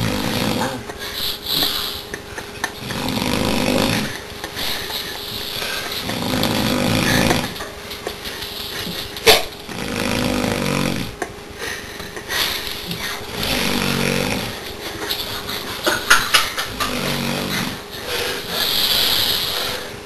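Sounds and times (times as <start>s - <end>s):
man snoring: 0.0s - 0.9s, 2.8s - 4.2s, 5.5s - 7.6s, 9.7s - 11.2s, 12.8s - 14.6s, 16.6s - 20.0s.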